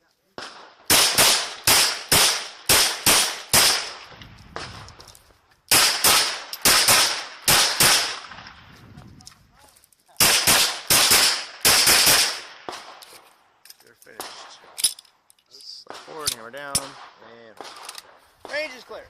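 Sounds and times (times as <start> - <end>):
rapid pistol fire: 0.4 - 4.8, 5.7 - 8.6, 10.2 - 13.0.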